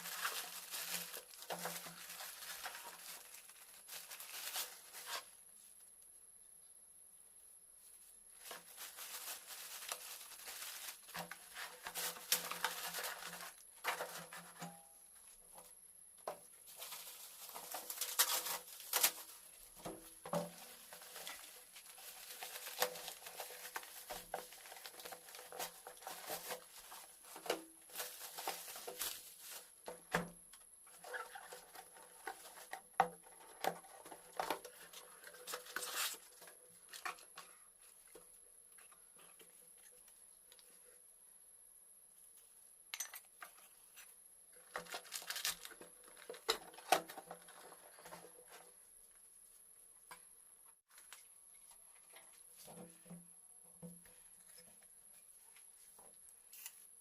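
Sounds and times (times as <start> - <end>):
faint high-pitched whine: 0.0 - 57.0.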